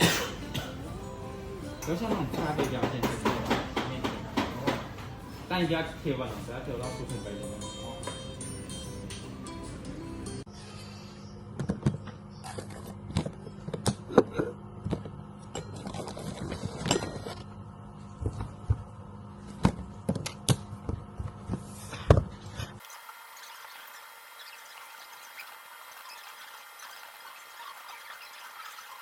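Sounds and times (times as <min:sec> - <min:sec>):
sharp knocks and clicks: 0:02.1 - 0:05.2.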